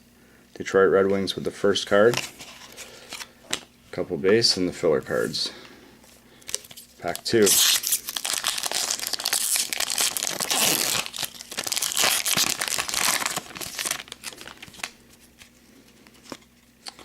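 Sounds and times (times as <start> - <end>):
wrapper tearing and crinkling: 6.4 - 15.5.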